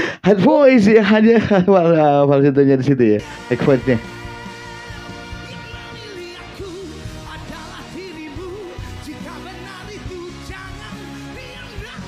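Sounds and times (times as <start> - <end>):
band and orchestra playing: 3.2 - 11.0
man singing a ballad: 3.2 - 12.0.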